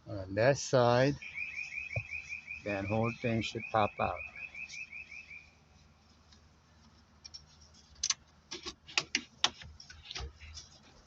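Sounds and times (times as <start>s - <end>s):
rapid high beeping: 1.1s - 5.5s.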